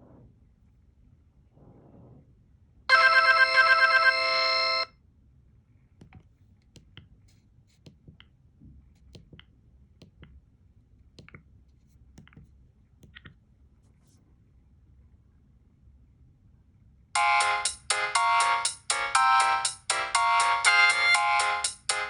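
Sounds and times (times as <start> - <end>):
phone ringtone melody: 2.9 - 4.9, 17.2 - 22.0.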